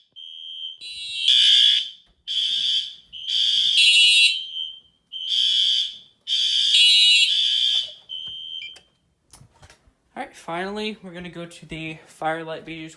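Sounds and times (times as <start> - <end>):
fire alarm horn blasts: 0.0 - 8.8.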